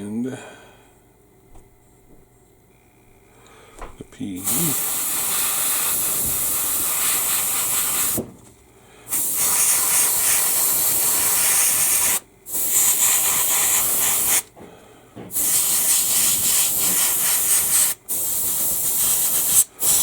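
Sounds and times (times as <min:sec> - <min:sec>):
airbrush spraying hiss: 0:04.4 - 0:08.2, 0:09.1 - 0:14.5, 0:15.3 - 0:20.0.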